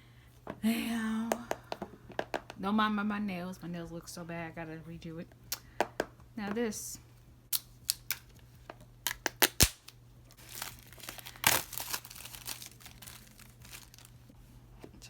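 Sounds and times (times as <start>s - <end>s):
paper seal crinkling and tearing: 9.1s - 14.2s.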